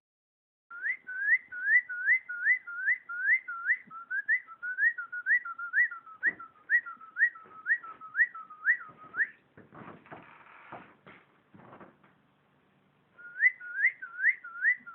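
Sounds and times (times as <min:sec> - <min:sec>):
cockatiel whistling: 0:00.7 - 0:09.4, 0:13.2 - 0:14.9.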